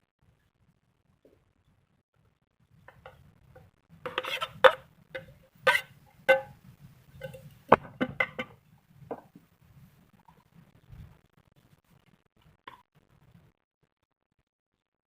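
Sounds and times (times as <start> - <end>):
metal cookware clinking: 4.1 - 9.3.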